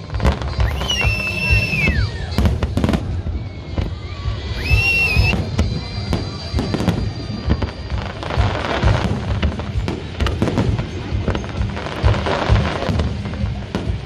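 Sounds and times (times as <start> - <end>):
firework whistle: 0.0 - 9.4
fireworks bangs and crackling: 0.0 - 14.0.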